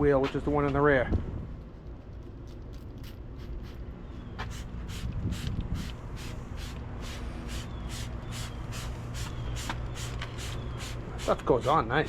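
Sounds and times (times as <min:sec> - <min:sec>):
spray bottle hissing bursts: 0:04.4 - 0:11.4.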